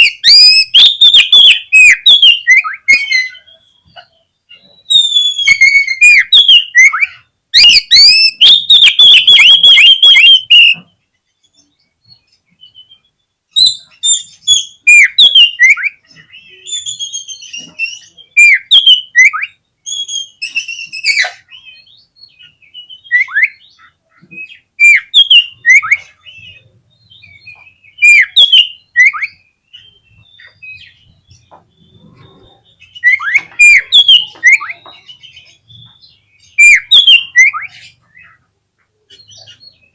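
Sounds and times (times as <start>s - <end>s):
bird singing whistled phrases: 0.0s - 4.0s, 4.6s - 10.9s, 12.1s - 23.8s, 24.4s - 31.1s, 32.9s - 35.5s, 36.4s - 38.0s
rapid bird chattering: 0.0s - 11.0s, 13.6s - 39.9s.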